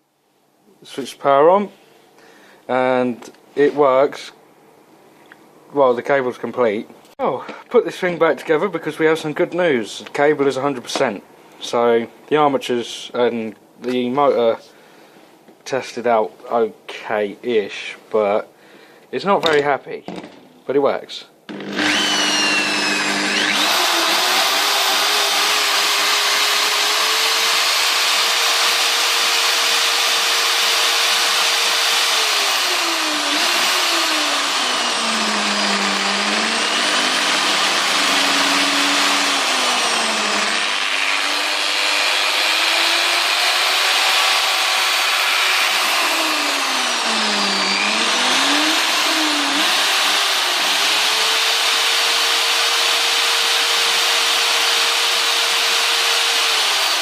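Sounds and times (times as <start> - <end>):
hammer drill motor whining: 21.5 - 57.0.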